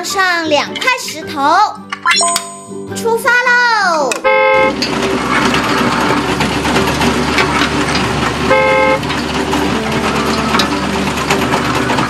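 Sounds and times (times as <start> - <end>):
horn honk: 4.2 - 4.8, 8.4 - 9.1, 9.7 - 10.8
toy engine rumble: 4.6 - 12.0.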